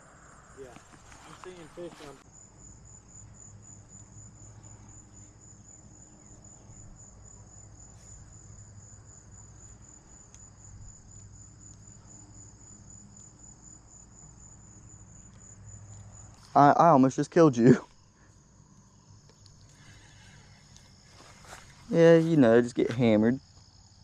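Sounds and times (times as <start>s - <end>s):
insect chorus trilling: 0.0s - 24.0s
faint ticks: 3.9s - 5.3s, 9.8s - 13.4s, 15.2s - 16.5s, 18.2s - 21.3s.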